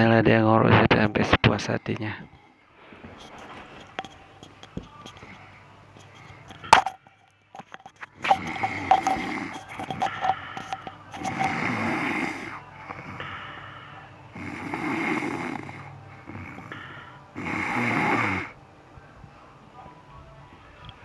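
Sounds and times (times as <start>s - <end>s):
soft breathing: 1.7s - 18.6s
man snoring loudly: 11.2s - 13.4s, 14.3s - 18.6s.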